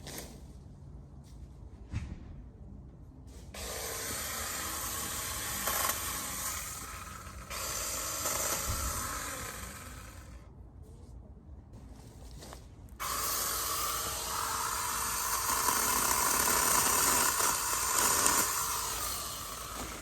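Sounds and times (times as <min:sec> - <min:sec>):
mini chainsaw cutting branch: 0:03.5 - 0:10.4, 0:12.4 - 0:20.0.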